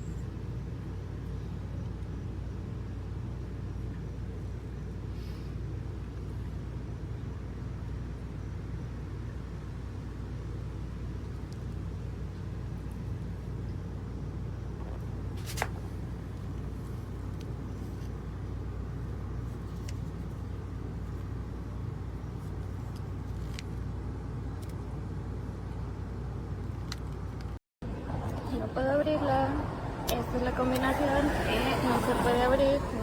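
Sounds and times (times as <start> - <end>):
low vehicle rumble: 27.8 - 33.0.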